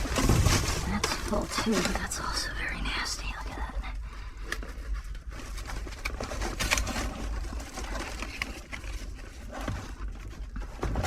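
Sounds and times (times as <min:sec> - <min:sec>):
rubbish rustling: 0:00.0 - 0:02.6, 0:04.5 - 0:11.0
steady low rumble: 0:00.0 - 0:05.4.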